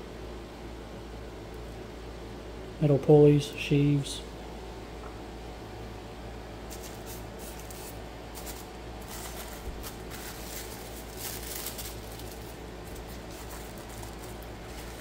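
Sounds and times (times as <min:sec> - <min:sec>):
steady low hum: 0:00.0 - 0:15.0
packaging rustling: 0:06.7 - 0:15.0.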